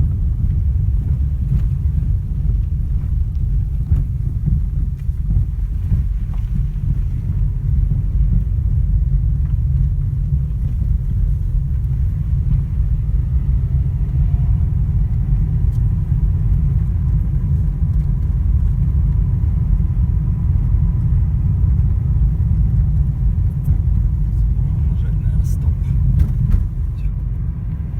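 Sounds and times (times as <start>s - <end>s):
car tyres rumbling on rough road: 0.0s - 27.9s
faint suspension knock: 26.0s - 27.1s.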